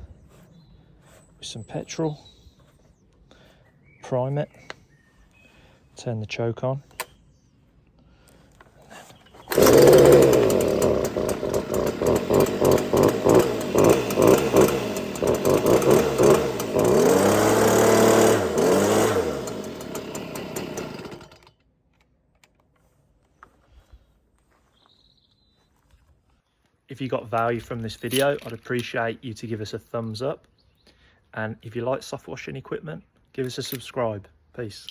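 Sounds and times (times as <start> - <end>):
leaf blower engine running: 9.4 - 21.5.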